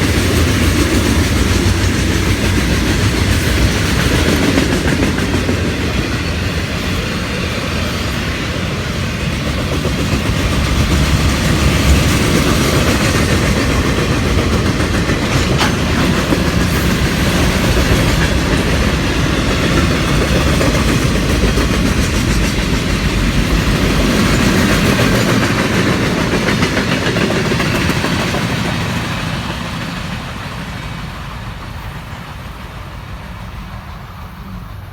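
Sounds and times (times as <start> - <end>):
wheels clacking over rail joints: 0.0 - 34.6
freight train rumble: 0.0 - 34.9.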